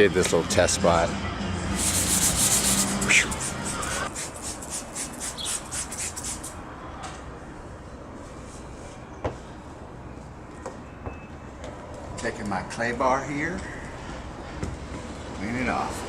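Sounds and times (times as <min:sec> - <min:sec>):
scrubbing strokes on car paint: 0:01.8 - 0:06.6.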